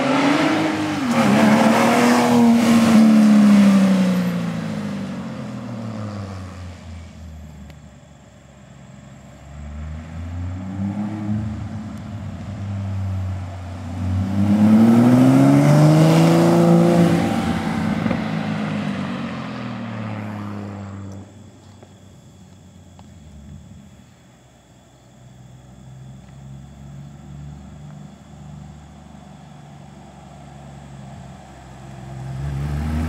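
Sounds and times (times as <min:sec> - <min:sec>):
sports car accelerating past: 0:00.0 - 0:07.4, 0:09.4 - 0:21.4, 0:26.0 - 0:33.0.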